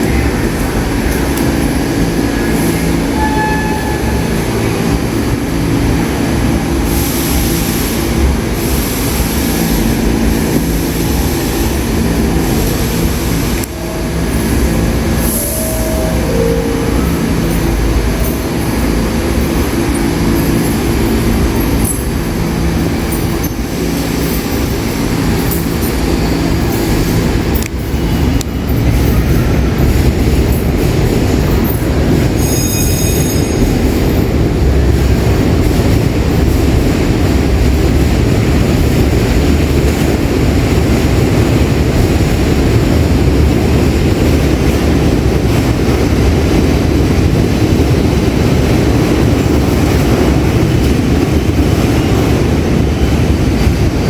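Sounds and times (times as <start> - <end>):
subway train rumbling on rails: 0.0 - 54.0
high-pitched wheel squeal: 3.2 - 4.4, 32.4 - 33.7.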